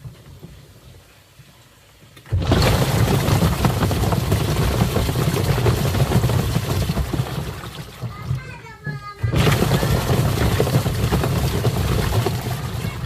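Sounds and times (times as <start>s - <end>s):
water churning and splashing: 2.3s - 8.6s, 9.2s - 13.0s
washing machine motor hum: 2.3s - 13.0s.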